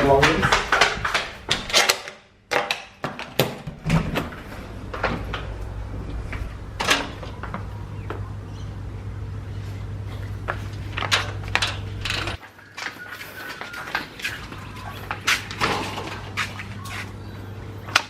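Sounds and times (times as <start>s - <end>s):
steady low hum: 3.7s - 12.4s.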